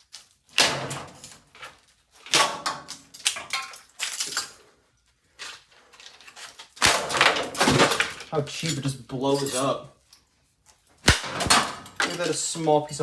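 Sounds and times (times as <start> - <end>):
plastic coffee maker smashed: 0.5 - 1.4, 2.2 - 4.5, 6.6 - 8.3, 11.0 - 12.3.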